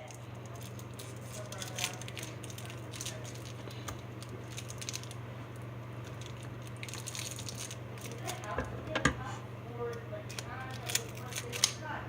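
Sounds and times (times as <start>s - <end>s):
small items clicking and crackling: 0.0s - 5.2s, 6.0s - 8.6s, 10.3s - 11.8s
steady low hum: 0.0s - 12.0s.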